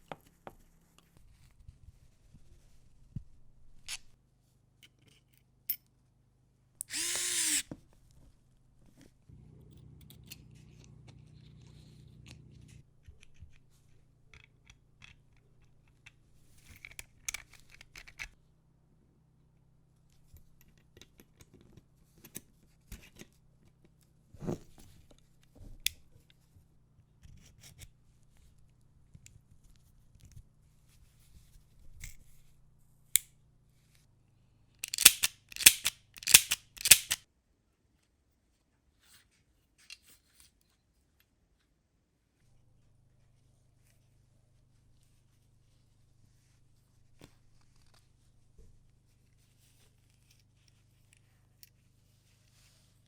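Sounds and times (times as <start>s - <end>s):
low hum: 9.3s - 12.8s
small metal clicks and knocks: 34.8s - 37.2s.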